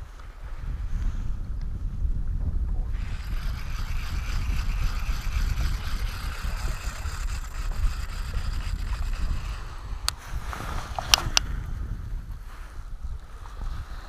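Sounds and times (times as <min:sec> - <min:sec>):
wind buffeting microphone: 0:00.0 - 0:14.0
fishing reel whirring: 0:03.0 - 0:10.2.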